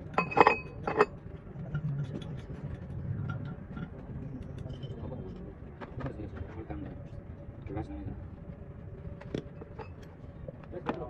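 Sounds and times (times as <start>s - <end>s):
steady low rumble: 0.0s - 11.0s.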